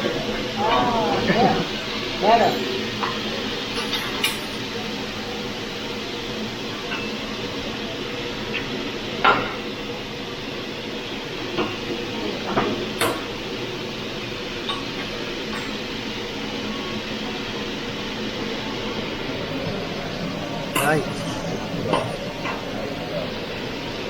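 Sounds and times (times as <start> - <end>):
steady background hum: 0.0 - 24.0
metal utensils clinking: 2.2 - 4.8, 20.7 - 22.6.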